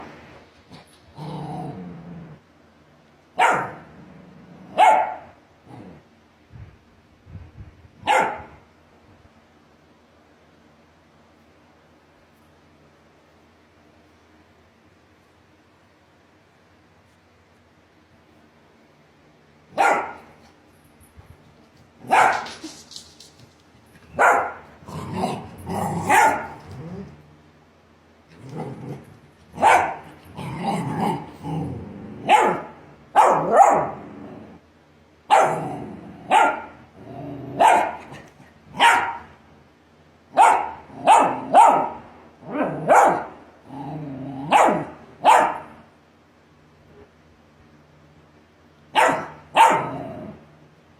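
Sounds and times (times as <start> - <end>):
dog growling: 0.8 - 2.5, 3.8 - 4.8, 5.6 - 6.1, 24.6 - 27.3, 28.3 - 32.7, 33.4 - 34.6, 35.5 - 36.3, 36.9 - 38.3, 42.4 - 45.0, 49.8 - 50.5
dog barking: 3.4 - 3.8, 4.8 - 5.4, 8.0 - 8.6, 19.8 - 20.3, 22.0 - 22.5, 24.2 - 24.6, 26.0 - 26.6, 29.6 - 30.0, 32.3 - 34.0, 35.3 - 35.6, 36.3 - 36.8, 37.6 - 38.1, 38.8 - 39.3, 40.4 - 42.0, 42.6 - 43.4, 44.5 - 45.7, 48.9 - 50.0.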